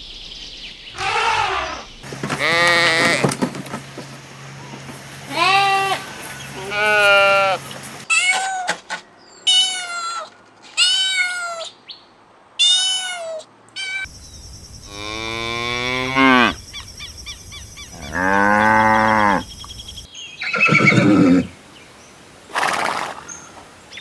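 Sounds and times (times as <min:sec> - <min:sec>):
cow mooing: 0:02.4 - 0:03.3, 0:14.9 - 0:16.6, 0:17.9 - 0:19.5, 0:20.6 - 0:21.5.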